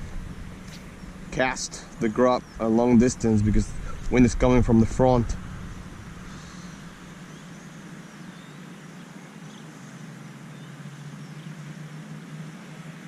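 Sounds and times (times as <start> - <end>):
distant traffic hum: 0.0 - 13.0
faint bird chirps: 6.2 - 12.1.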